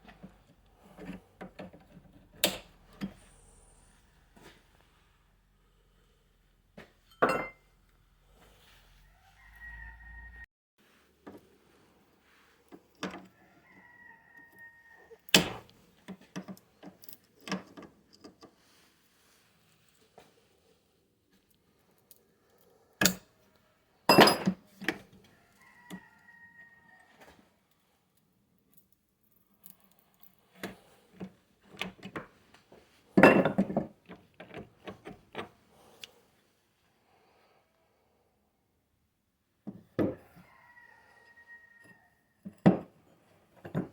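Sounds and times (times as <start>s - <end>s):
metal tools clinking: 7.1s - 7.6s
rooster crowing: 9.0s - 10.5s, 13.3s - 15.2s, 25.3s - 27.4s, 40.2s - 42.4s.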